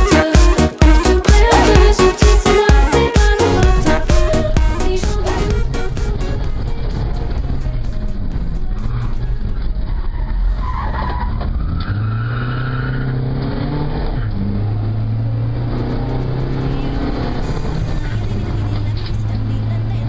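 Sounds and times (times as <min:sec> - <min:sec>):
rally car engine running hard: 0:00.0 - 0:20.0
tyre squeal: 0:09.9 - 0:13.2.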